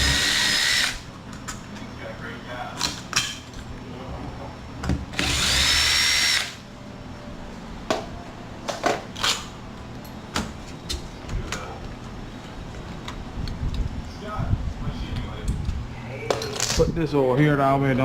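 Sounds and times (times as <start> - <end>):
power drill running: 0.0 - 1.1, 5.1 - 6.6.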